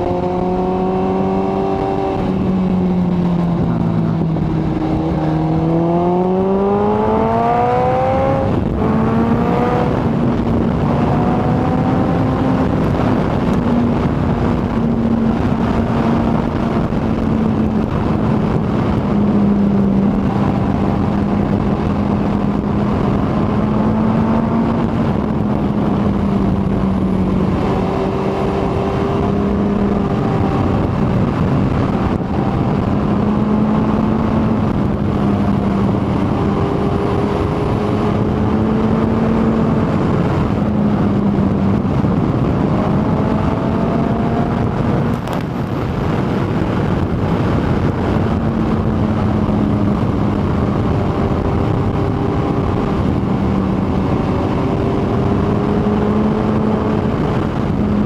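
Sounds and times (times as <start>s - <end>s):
motorcycle engine accelerating: 0.0s - 58.0s
wind noise: 0.0s - 58.0s.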